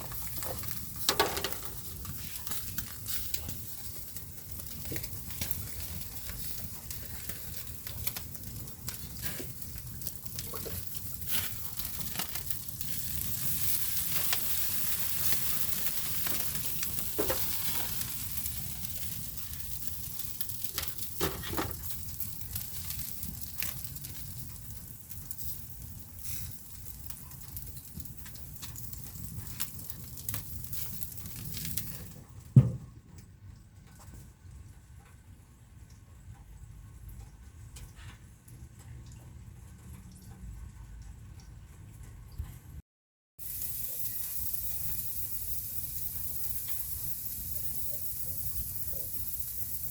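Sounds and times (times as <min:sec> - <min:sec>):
burgers sizzling on a grill: 0:00.0 - 0:32.2, 0:43.4 - 0:49.9.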